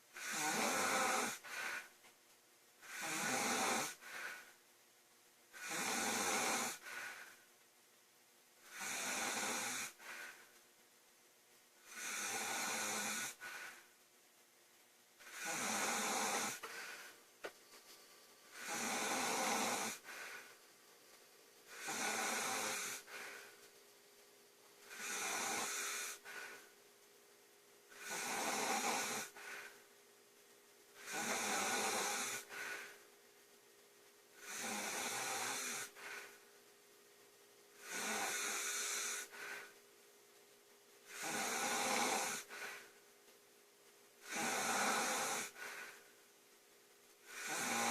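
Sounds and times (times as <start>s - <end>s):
woman snoring: 0.2s - 1.9s, 2.8s - 4.5s, 5.5s - 7.4s, 8.6s - 10.5s, 11.8s - 13.9s, 15.2s - 17.2s, 18.5s - 20.6s, 21.7s - 23.5s, 24.9s - 26.7s, 27.9s - 29.8s, 31.0s - 33.0s, 34.4s - 36.4s, 37.8s - 39.8s, 41.1s - 42.9s, 44.2s - 46.0s, 47.3s - 47.9s.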